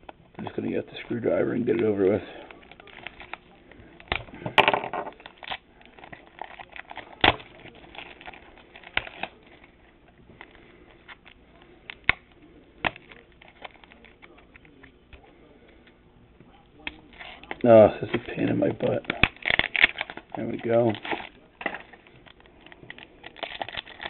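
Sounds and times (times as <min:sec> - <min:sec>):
wrapper crinkling: 0:02.1 - 0:12.2, 0:16.8 - 0:24.0
screwdriver prying card pack: 0:19.1 - 0:24.0.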